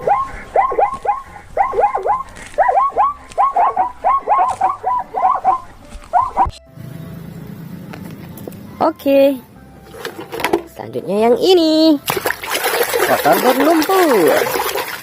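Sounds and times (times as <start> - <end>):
zebra yelping barks: 0.0 - 6.6.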